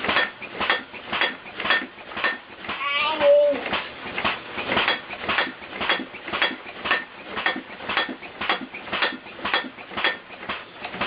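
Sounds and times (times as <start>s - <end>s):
machine clattering and banging: 0.0s - 2.9s, 3.6s - 11.0s.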